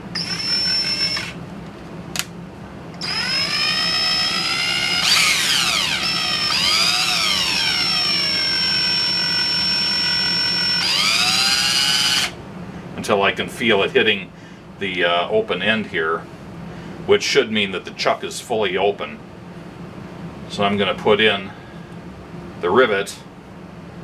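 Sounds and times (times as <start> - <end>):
electric drill motor whining: 0.0 - 1.4, 3.0 - 12.4.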